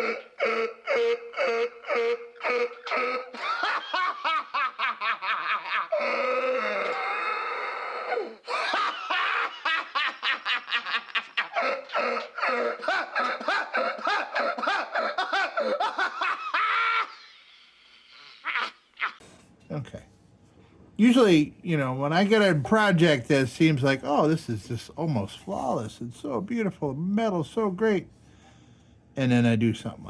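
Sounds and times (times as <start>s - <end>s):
person laughing: 0.0s - 19.2s.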